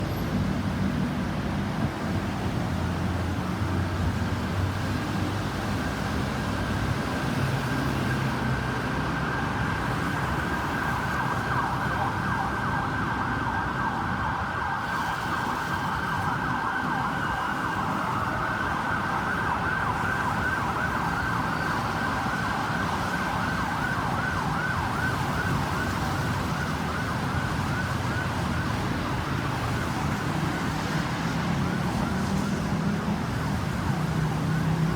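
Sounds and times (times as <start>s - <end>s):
ambulance siren yelping: 7.8s - 34.5s.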